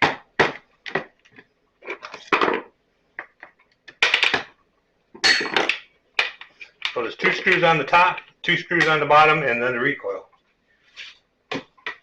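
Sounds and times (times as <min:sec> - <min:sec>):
tools clattering on a workbench: 0:00.8 - 0:04.6, 0:05.2 - 0:09.0.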